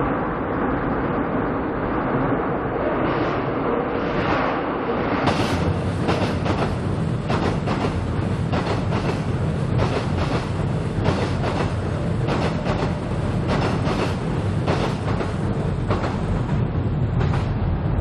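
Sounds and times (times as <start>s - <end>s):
train rumbling: 0.0s - 18.0s
wheels clacking over rail joints: 5.3s - 17.6s.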